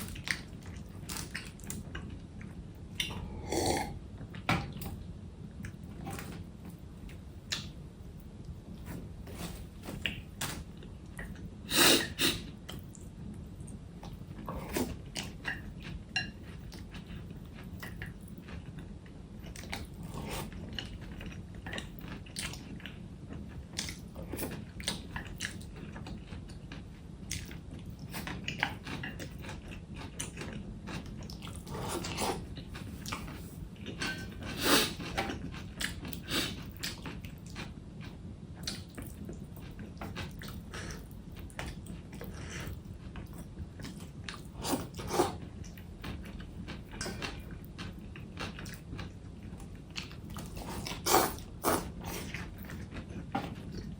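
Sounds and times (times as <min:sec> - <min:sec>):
chewing and biting food: 0:14.0 - 0:53.9.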